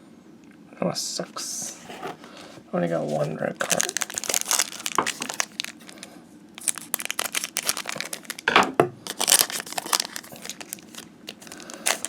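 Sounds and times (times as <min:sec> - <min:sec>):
foil wrapper crinkling: 0:02.9 - 0:12.0.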